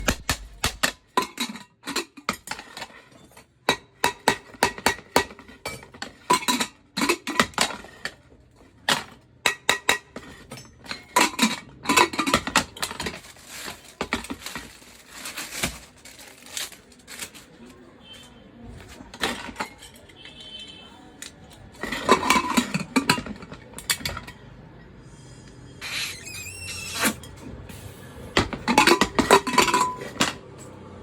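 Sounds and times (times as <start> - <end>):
metal kitchenware clanking: 0.0 - 16.0, 18.8 - 20.5, 21.6 - 24.4, 28.3 - 30.7.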